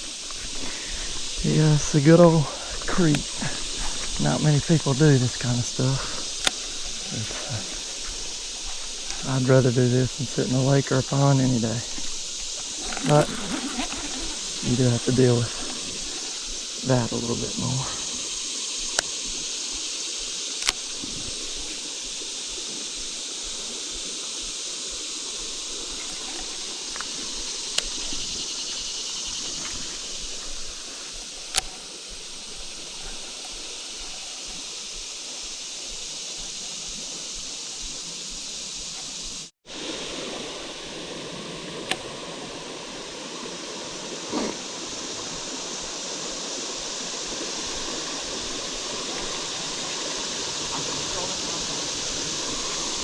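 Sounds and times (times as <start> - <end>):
creek water running: 0.0 - 53.0
sharp clicks: 6.2 - 7.0, 20.6 - 21.1, 31.4 - 31.9.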